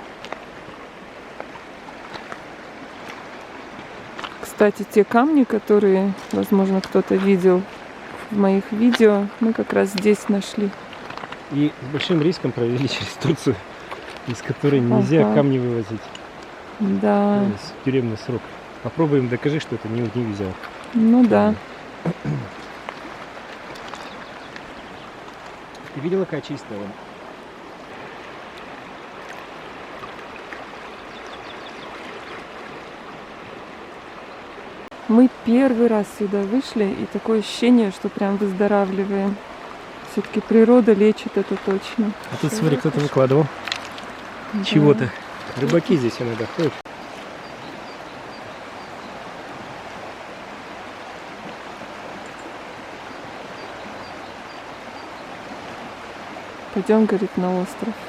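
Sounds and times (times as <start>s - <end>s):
river rushing over rapids: 0.0s - 58.0s.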